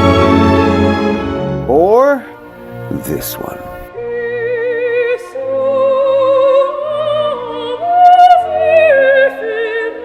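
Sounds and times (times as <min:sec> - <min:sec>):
orchestral accompaniment: 0:00.0 - 0:06.0
operatic singing: 0:02.4 - 0:10.0.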